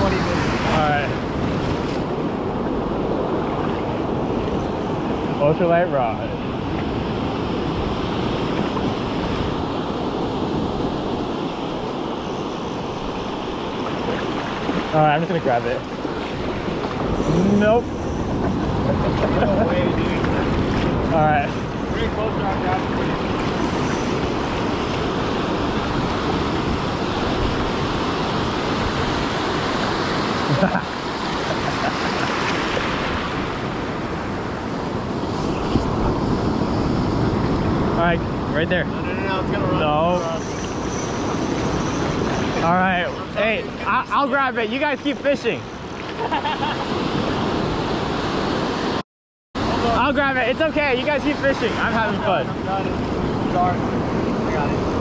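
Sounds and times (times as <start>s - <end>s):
ocean surf washing onto beach: 0.0s - 49.0s, 49.6s - 55.0s
wind noise on microphone: 6.2s - 43.9s.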